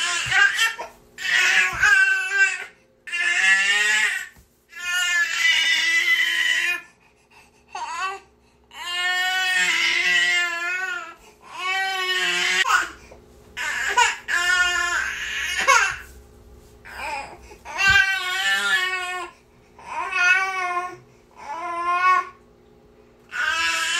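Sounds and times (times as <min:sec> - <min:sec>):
baby crying: 0:00.0 - 0:06.9, 0:07.7 - 0:13.0, 0:13.6 - 0:16.1, 0:16.9 - 0:22.4, 0:23.3 - 0:23.9.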